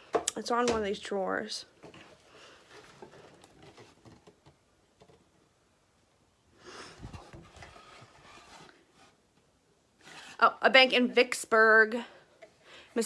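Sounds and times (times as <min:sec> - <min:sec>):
faint handling sounds: 0:01.7 - 0:05.5, 0:06.7 - 0:10.6.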